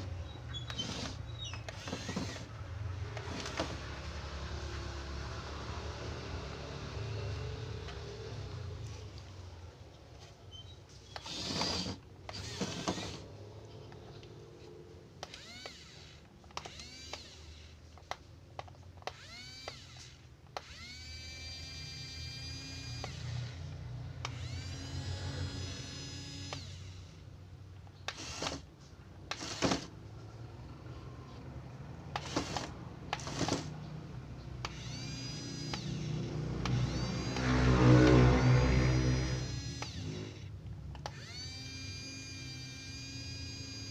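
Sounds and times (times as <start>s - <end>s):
toy motor whining: 0.0s - 2.5s, 11.1s - 13.3s, 15.2s - 17.8s, 19.0s - 27.2s, 28.0s - 28.7s, 29.3s - 29.9s, 32.2s - 33.8s, 34.6s - 43.9s.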